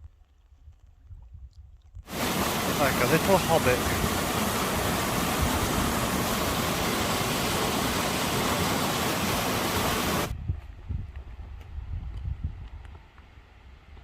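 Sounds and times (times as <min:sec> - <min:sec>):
rushing water: 0:02.1 - 0:10.3.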